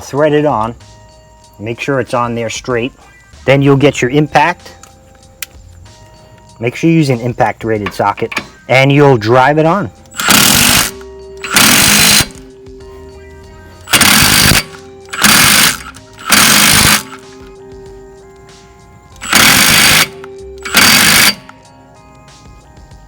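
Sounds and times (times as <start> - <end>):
impact wrench hammering: 10.1 - 12.4, 13.9 - 17.3, 19.2 - 21.5.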